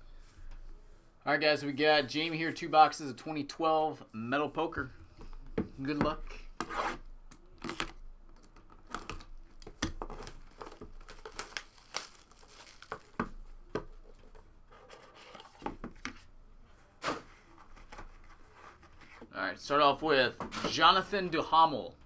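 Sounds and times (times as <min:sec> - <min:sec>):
plastic wrapping tearing and crinkling: 0:08.8 - 0:13.2.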